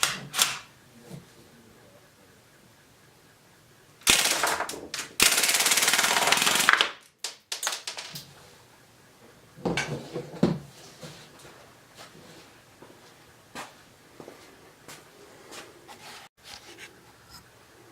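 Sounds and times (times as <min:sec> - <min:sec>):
toy gun firing full auto: 0:00.0 - 0:00.7, 0:04.0 - 0:08.1.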